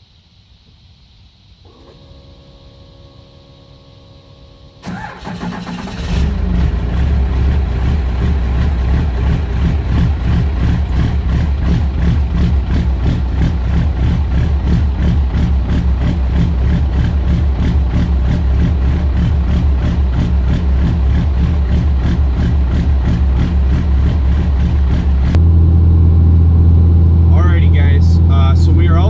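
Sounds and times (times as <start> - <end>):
diesel engine idling: 1.5 - 29.0
starter motor cranking: 4.8 - 25.4.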